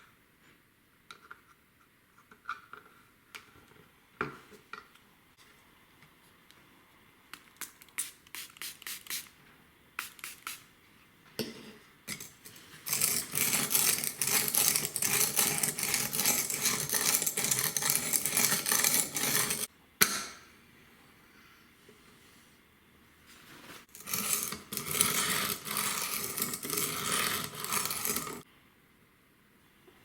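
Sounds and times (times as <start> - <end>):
knife scraping on sharpener: 12.1 - 19.7, 23.9 - 28.4.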